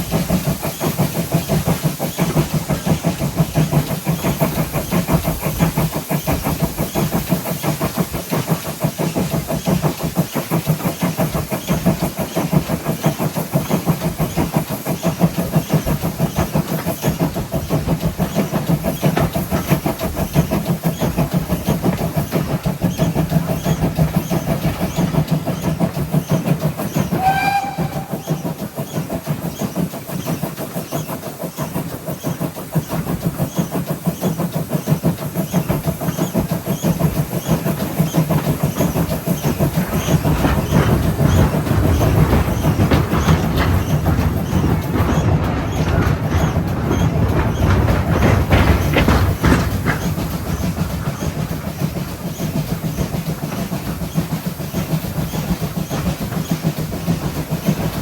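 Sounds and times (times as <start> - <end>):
steam locomotive running: 0.0 - 58.0
locomotive whistle: 27.0 - 28.6.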